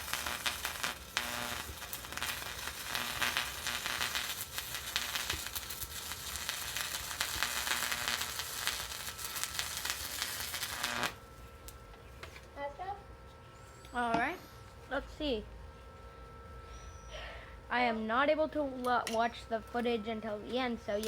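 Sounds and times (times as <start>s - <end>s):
arc welder crackling sizzle: 0.0s - 12.6s, 18.6s - 21.0s.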